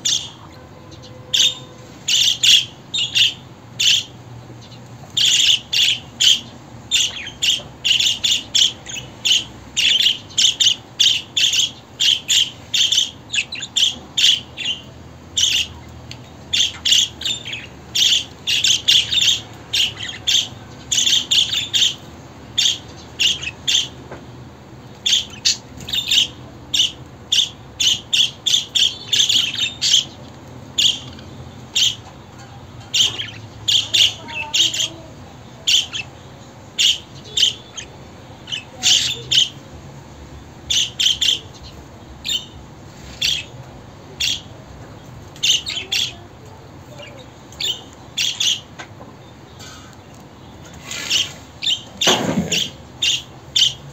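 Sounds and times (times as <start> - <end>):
budgerigar chirps and squawks: 0.0 - 4.1, 5.2 - 15.9, 16.5 - 22.0, 22.6 - 24.0, 25.0 - 30.2, 30.8 - 36.2, 36.8 - 39.6, 40.7 - 42.6, 43.2 - 43.6, 46.9 - 48.9, 50.6 - 53.9.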